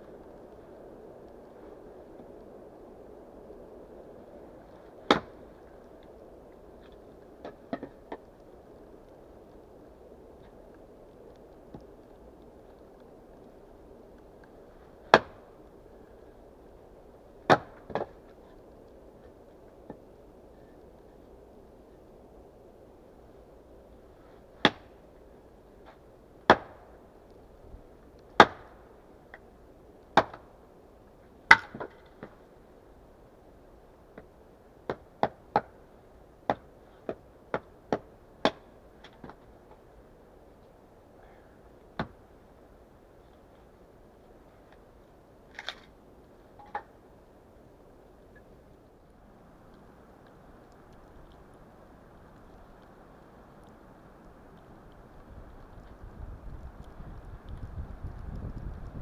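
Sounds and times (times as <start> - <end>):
axe chopping wood: 17.5 - 18.1.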